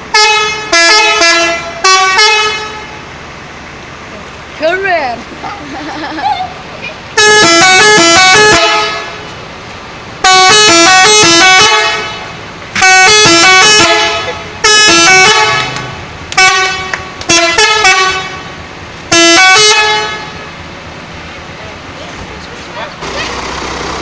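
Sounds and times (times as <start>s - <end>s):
bus horn playing multi-note tune: 0.0s - 3.0s, 7.2s - 9.3s, 10.2s - 20.5s.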